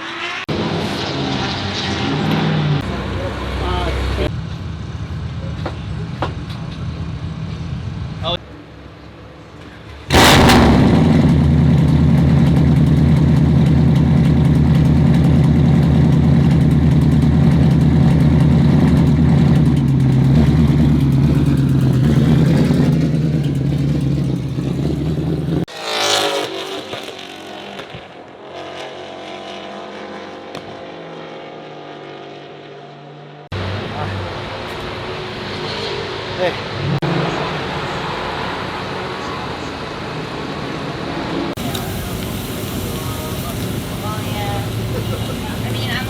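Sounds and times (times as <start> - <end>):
car passing by: 0.0 - 4.3, 33.6 - 46.0
race car engine at high revs: 0.0 - 4.3, 10.1 - 46.0
quieter engine note: 0.2 - 8.4, 10.1 - 25.7, 36.7 - 46.0.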